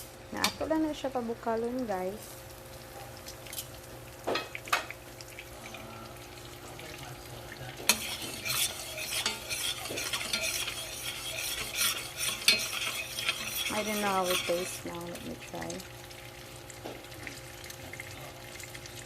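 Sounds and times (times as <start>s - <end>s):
spoon scraping pan: 7.8s - 15.5s.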